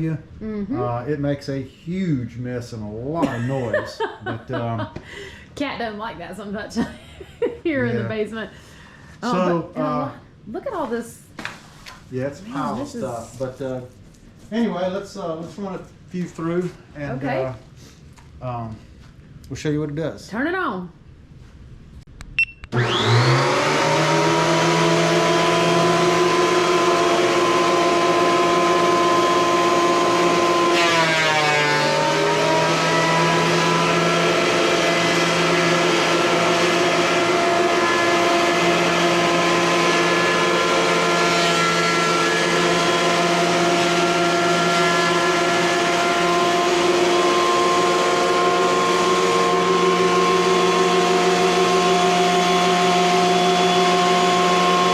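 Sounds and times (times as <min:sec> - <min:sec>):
thickness planer motor whine: 0:22.7 - 0:54.9.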